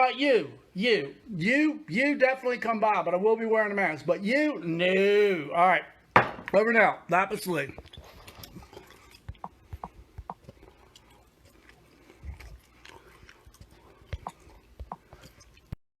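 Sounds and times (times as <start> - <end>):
quiet chewing: 7.7 - 15.8.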